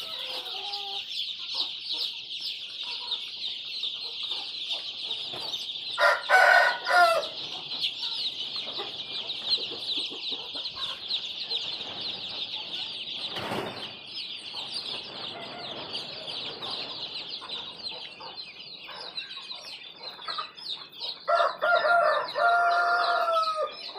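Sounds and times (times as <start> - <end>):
chickens cheeping and clucking: 0.0 - 23.9
rooster crowing: 6.0 - 7.4, 21.3 - 23.8.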